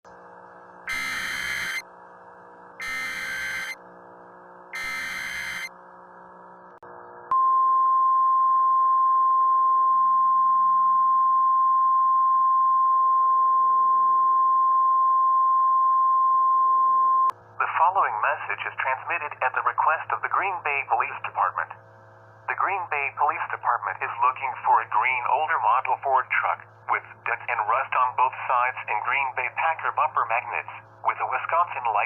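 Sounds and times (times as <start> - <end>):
steady warning tone: 0.7 - 32.0
screeching digital data bursts: 0.9 - 1.8, 2.8 - 3.8, 4.8 - 5.7
faint radio hiss: 17.4 - 32.0.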